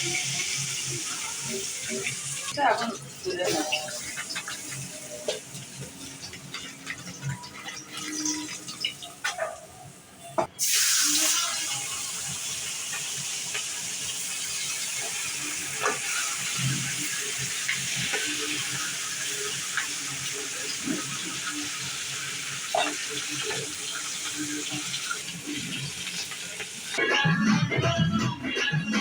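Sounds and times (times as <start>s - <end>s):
food sizzling in hot oil: 0.0s - 27.0s
oil spatters and ticks: 1.9s - 9.5s, 12.9s - 27.0s.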